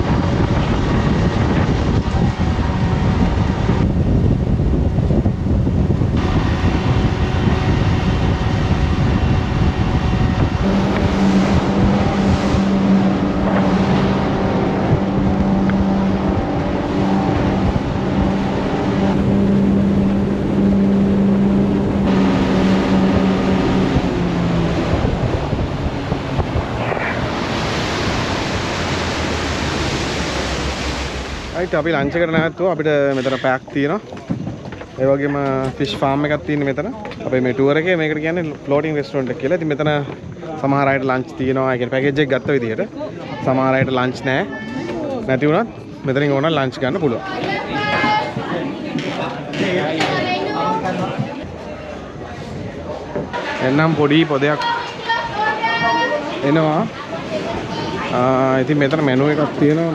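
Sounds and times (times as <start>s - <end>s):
wind on microphone: 0.0s - 36.4s
speedboat engine running: 0.0s - 59.9s
water rushing past hull: 0.0s - 59.9s.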